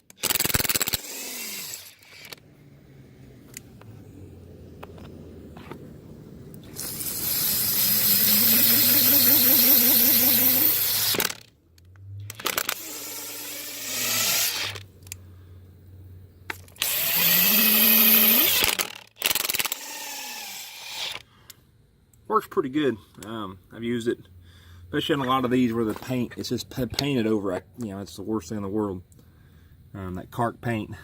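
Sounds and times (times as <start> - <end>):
impact gun motor whine: 0.2 - 5.8, 6.6 - 11.5, 12.3 - 14.9, 16.5 - 21.2.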